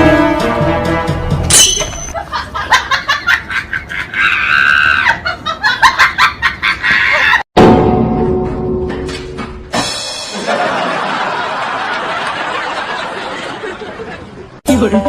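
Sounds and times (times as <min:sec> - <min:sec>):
background music: 0:00.0 - 0:02.1, 0:14.6 - 0:15.0
people laughing: 0:02.1 - 0:07.4, 0:10.3 - 0:14.6.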